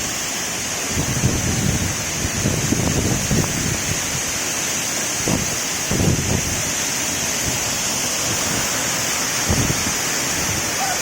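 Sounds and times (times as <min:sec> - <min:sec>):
waterfall rushing: 0:00.0 - 0:11.0
wind buffeting microphone: 0:00.9 - 0:04.3, 0:05.2 - 0:08.7, 0:09.4 - 0:10.8.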